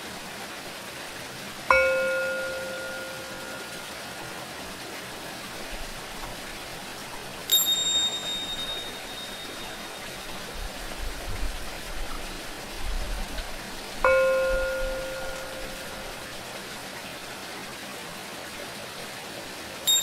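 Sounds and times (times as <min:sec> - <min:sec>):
small cymbals ringing: 0:01.7 - 0:05.6, 0:07.5 - 0:10.8, 0:14.0 - 0:16.8.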